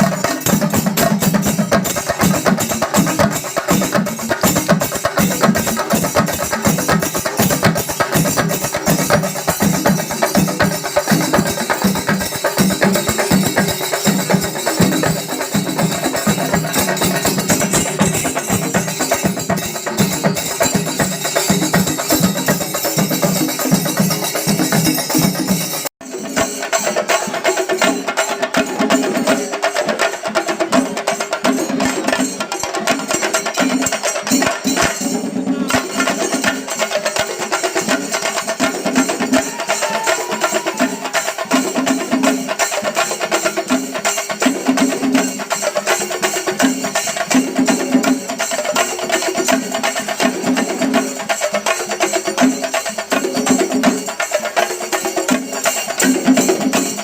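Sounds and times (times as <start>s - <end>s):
temple percussion ensemble drumming: 0.0s - 57.0s.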